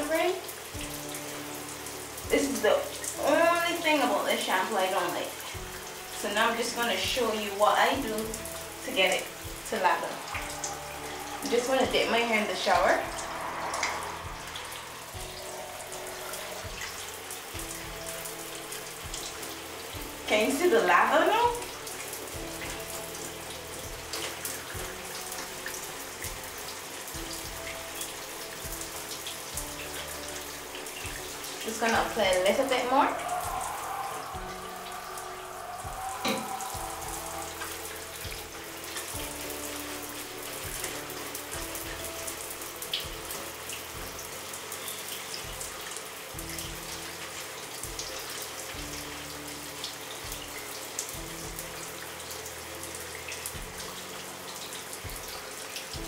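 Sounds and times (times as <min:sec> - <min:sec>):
wet squelches of lathering hair: 0:00.0 - 0:49.1
shower spray hissing: 0:00.0 - 0:56.0
water splashing ticks: 0:21.5 - 0:49.2.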